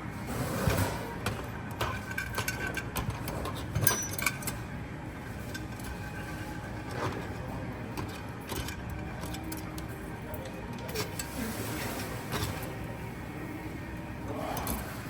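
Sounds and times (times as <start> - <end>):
hand tools clicking and clinking: 1.2 - 4.6, 8.0 - 11.3.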